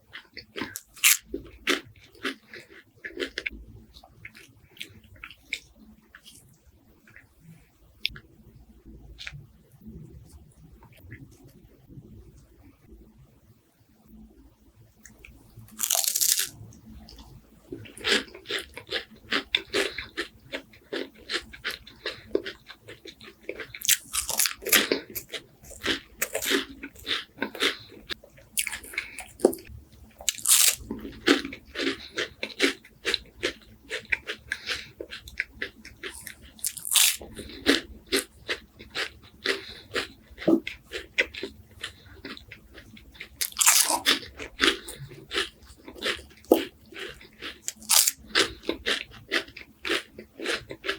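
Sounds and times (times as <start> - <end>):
crackling chewing: 0.0 - 8.2, 15.0 - 50.9
crunching bite of wafers: 0.1 - 3.5, 15.1 - 50.9.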